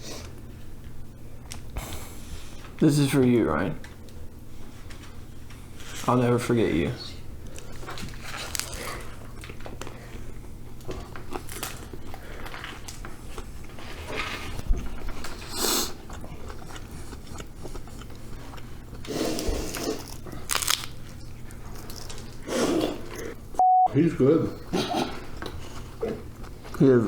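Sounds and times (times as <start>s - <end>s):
people chewing crunchy food: 7.4s - 23.5s, 24.5s - 27.0s.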